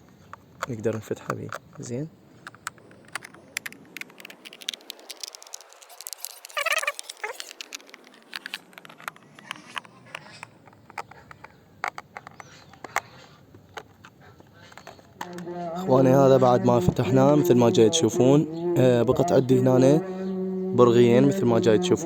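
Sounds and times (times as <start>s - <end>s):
screwdriver clicking on plastic: 0.0s - 15.5s
brief squeak: 4.5s - 11.5s.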